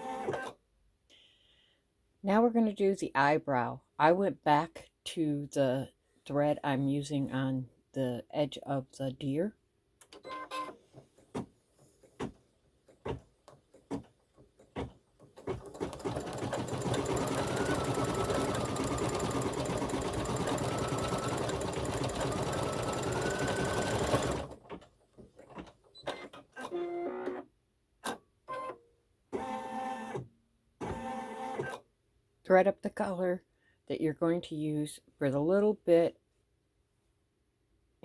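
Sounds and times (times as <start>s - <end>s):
embroidery machine stitching: 13.7s - 24.8s.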